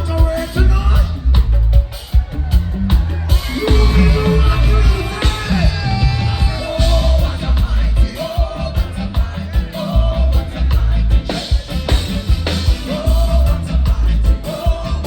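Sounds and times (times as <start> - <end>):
man singing: 0.0 - 1.6, 3.3 - 15.0
heavy pulsing bass line: 0.0 - 15.0
live reggae band: 0.0 - 15.0.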